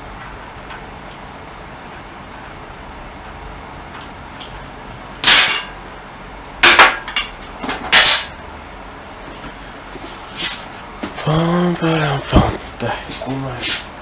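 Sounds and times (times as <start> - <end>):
metal tools clattering: 5.2 - 5.8, 6.6 - 8.4.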